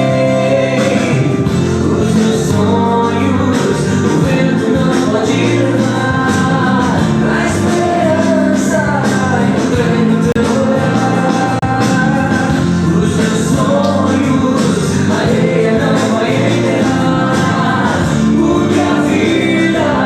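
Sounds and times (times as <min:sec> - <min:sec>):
gospel singing voices: 0:00.0 - 0:20.0
instrumental accompaniment: 0:00.0 - 0:20.0.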